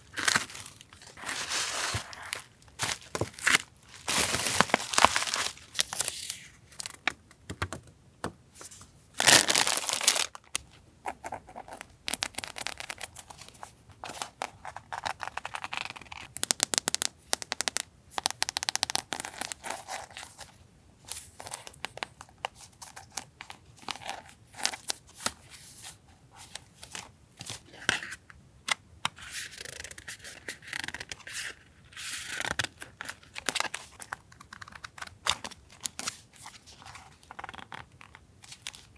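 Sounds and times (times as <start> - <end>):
paper and packaging rustling: 0.0 - 7.1, 8.6 - 10.6.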